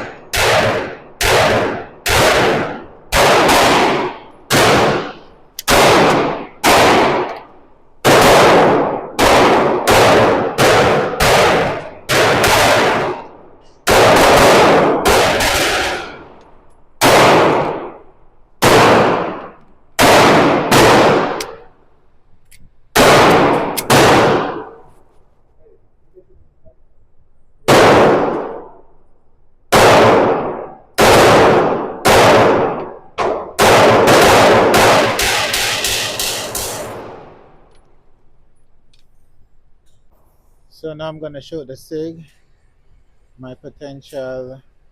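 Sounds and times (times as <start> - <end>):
pistol shots: 0.0 - 16.4, 17.0 - 21.8, 22.9 - 24.9, 27.6 - 28.8, 29.7 - 37.6.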